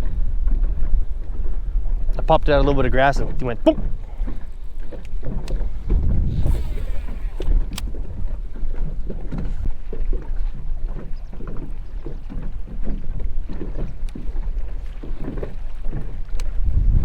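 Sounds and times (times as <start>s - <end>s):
waves slapping boat hull: 0.0s - 17.0s
wind buffeting microphone: 0.0s - 17.0s
steady low rumble: 3.9s - 9.0s, 16.4s - 17.0s.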